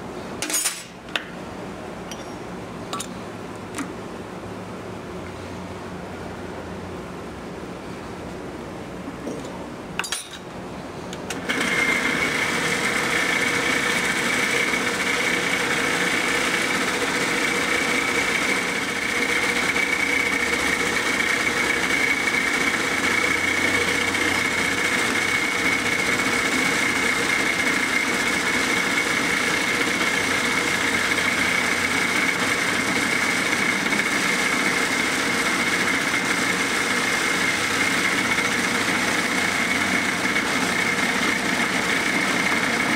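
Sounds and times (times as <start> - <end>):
electric machine whining and humming: 11.3 - 42.9.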